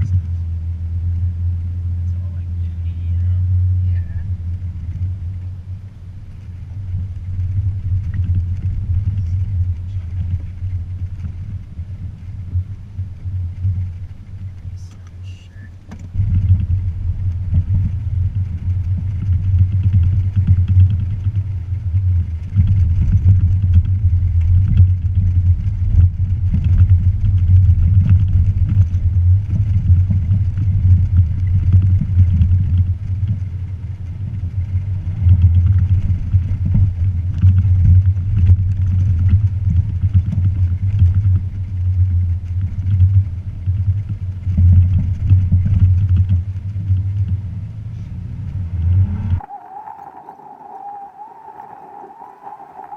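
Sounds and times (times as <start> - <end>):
truck engine rumbling off-road: 0.0 - 52.9.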